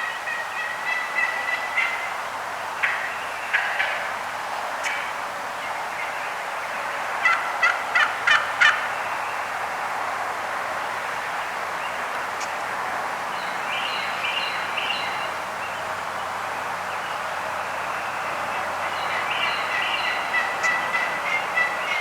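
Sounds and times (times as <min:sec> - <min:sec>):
higher turkey calls: 0:00.0 - 0:02.2, 0:02.8 - 0:04.2, 0:07.2 - 0:08.9, 0:18.5 - 0:22.0
turkey yelping: 0:19.1 - 0:22.0.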